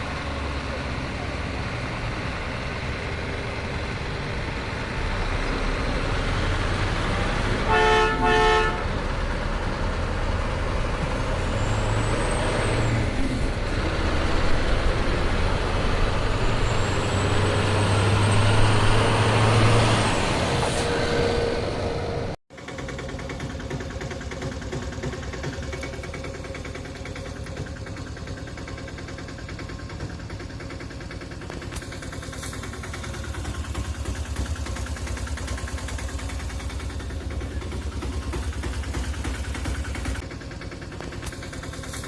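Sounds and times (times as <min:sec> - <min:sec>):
vehicle engine noise: 0:00.0 - 0:42.0
short horn toot: 0:07.6 - 0:08.9.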